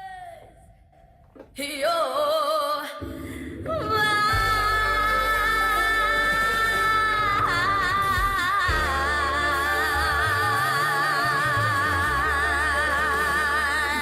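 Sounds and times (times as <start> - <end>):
low accompaniment notes: 3.0 - 14.0
person singing long note: 4.3 - 14.0.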